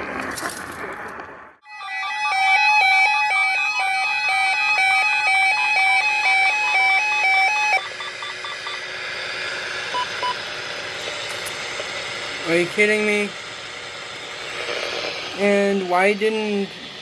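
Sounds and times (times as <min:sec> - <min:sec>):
alternating electronic alert beeps: 0:01.7 - 0:08.9, 0:09.9 - 0:10.4.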